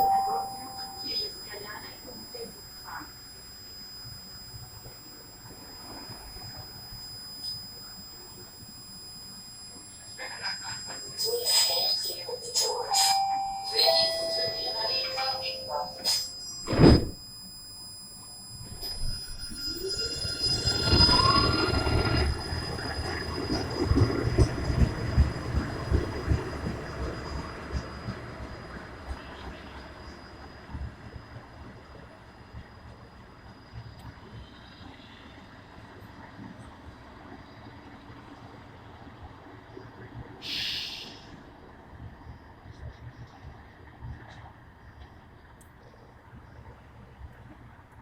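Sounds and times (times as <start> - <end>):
light rail train rumble: 0.0 - 3.2, 10.0 - 16.4, 18.7 - 48.0
high-pitched tone: 0.0 - 22.2
low thumps: 16.7 - 17.2
train wheels rumbling on track: 20.8 - 31.1.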